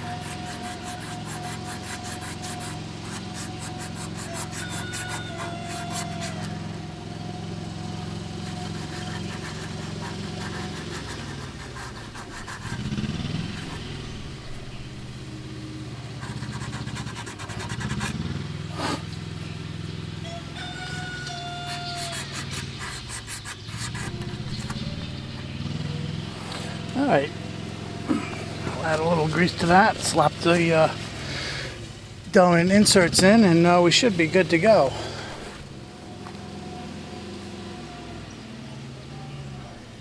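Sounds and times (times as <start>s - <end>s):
emery cloth rubbing metal: 0.0s - 6.8s, 8.1s - 15.2s, 16.0s - 19.7s, 20.4s - 31.3s
low engine hum: 0.0s - 40.0s.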